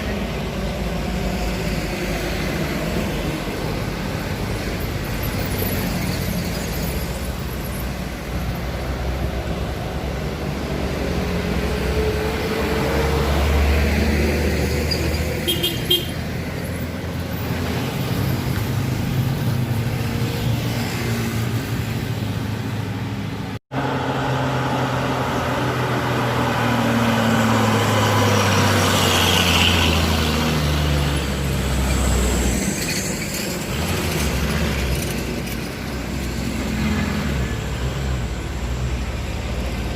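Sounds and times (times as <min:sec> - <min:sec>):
passing traffic: 0:00.0 - 0:39.9
heavy vehicle engines climbing: 0:16.2 - 0:39.9.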